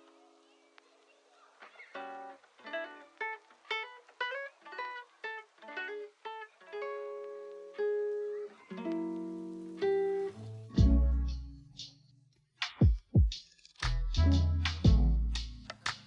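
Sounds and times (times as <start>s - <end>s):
plucked guitar or ukulele music: 1.9s - 11.9s, 13.8s - 16.0s
strummed chords: 8.8s - 11.9s.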